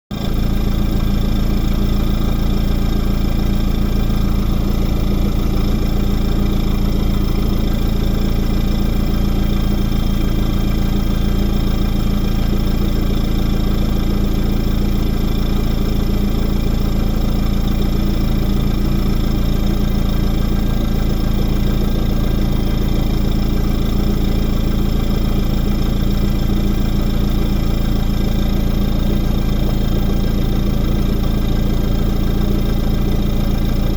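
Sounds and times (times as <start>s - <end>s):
car engine idling: 0.1s - 33.9s.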